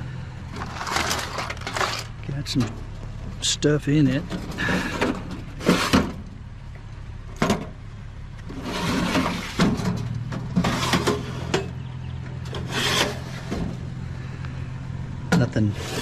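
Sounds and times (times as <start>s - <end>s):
steady low hum: 0.0s - 16.0s
knocks scrapes and rattles: 0.5s - 6.3s, 8.4s - 11.8s, 12.4s - 13.9s, 15.3s - 16.0s.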